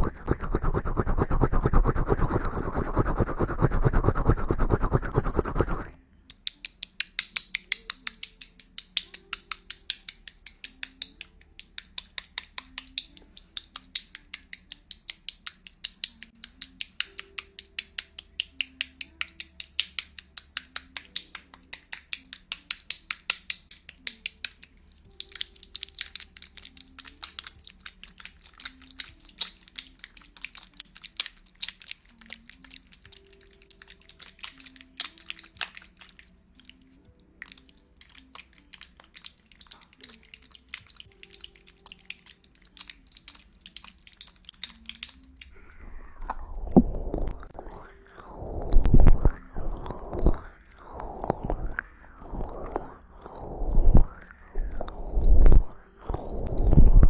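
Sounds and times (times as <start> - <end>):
tongue clicking: 0.0 - 9.4, 24.0 - 57.0
soft background music: 0.0 - 57.0.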